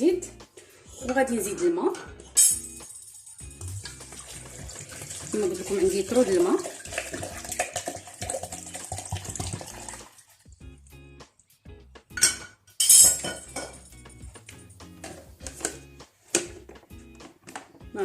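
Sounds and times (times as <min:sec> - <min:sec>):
background music: 0:00.0 - 0:18.0
water pouring into blender jar: 0:03.4 - 0:10.6
kitchenware clattering: 0:12.1 - 0:13.9, 0:15.0 - 0:16.6.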